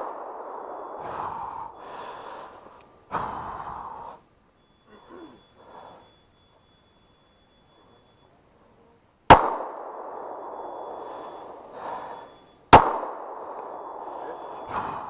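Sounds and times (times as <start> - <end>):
pistol shots with ringing tail: 0.0 - 1.0, 9.3 - 14.9.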